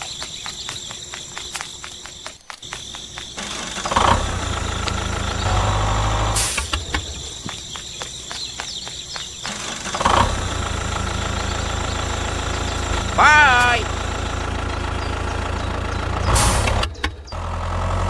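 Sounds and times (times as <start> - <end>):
brisk ticking clicks: 0.0 - 5.5, 6.6 - 13.1
low engine-like hum: 3.4 - 7.8, 9.4 - 18.0.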